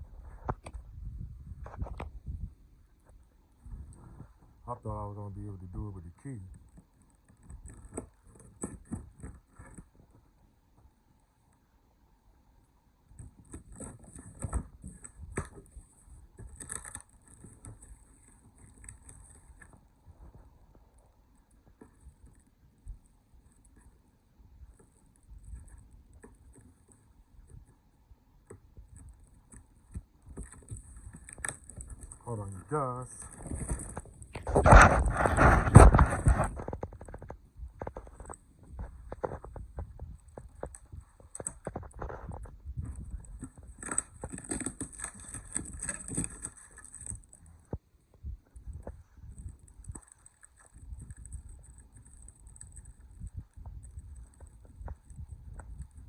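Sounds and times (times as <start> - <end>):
cardboard box being opened: 13.2 - 19.9, 30.3 - 37.3, 41.3 - 47.6
packing scraping and rustling: 13.2 - 20.6, 29.0 - 47.8.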